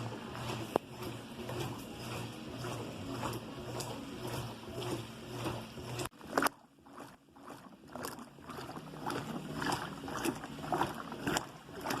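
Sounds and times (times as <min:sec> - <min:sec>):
washing machine sloshing: 0:00.0 - 0:12.0
water splash: 0:04.8 - 0:12.0.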